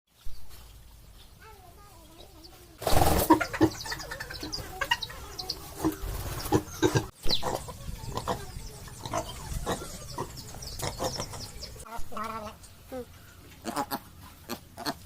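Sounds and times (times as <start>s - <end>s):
chickens clucking: 0.4s - 15.0s
pigs calling: 2.9s - 12.6s, 13.4s - 15.0s.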